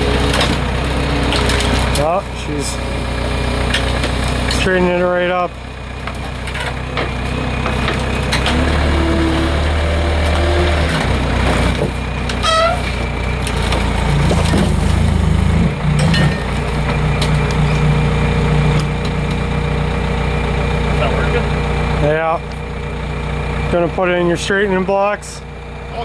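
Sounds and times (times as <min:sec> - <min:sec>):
skid steer engine under load: 0:00.0 - 0:26.0
knocks and creaks: 0:06.1 - 0:18.0.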